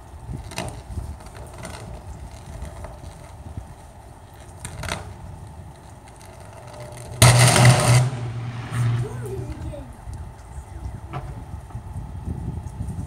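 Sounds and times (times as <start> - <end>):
street background noise: 0.0 - 13.0
electrical arcing crackles: 0.4 - 10.2.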